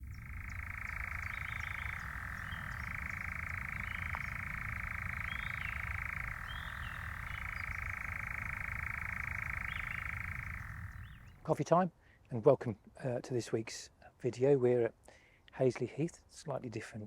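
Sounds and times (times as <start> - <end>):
nightjar churring: 0.0 - 11.3.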